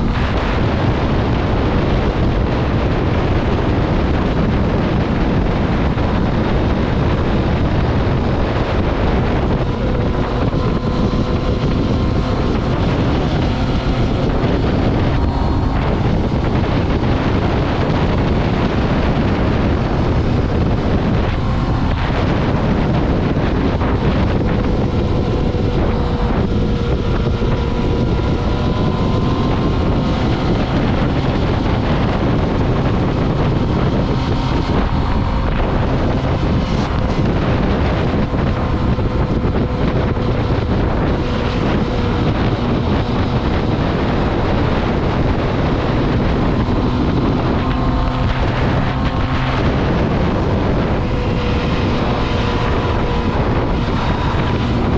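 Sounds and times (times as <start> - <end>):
motorcycle engine running: 0.0 - 54.9
wind noise on microphone: 0.0 - 54.9.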